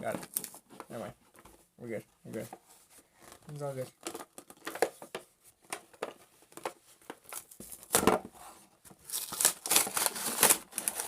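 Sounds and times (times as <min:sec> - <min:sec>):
packaging crinkling and tearing: 0:09.0 - 0:11.0.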